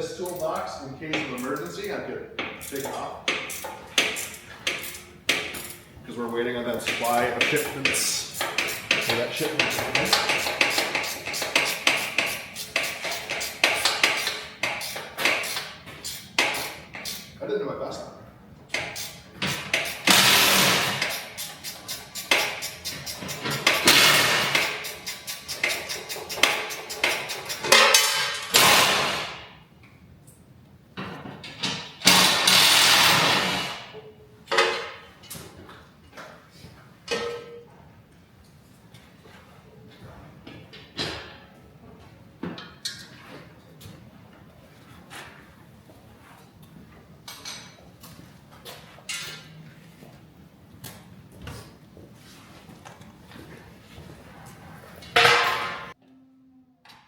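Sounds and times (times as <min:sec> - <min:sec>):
metal tools clanking: 0:00.0 - 0:14.5
sharp metal clanks: 0:18.8 - 0:29.5, 0:37.1 - 0:37.7, 0:55.2 - 0:56.0.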